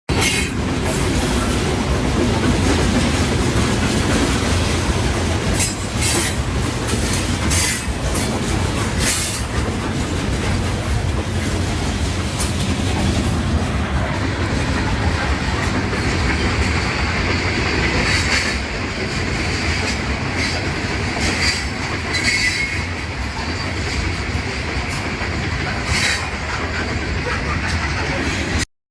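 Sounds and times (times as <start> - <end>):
train wheels clacking on rails: 0.1 - 28.7
wheels squealing: 21.2 - 24.0.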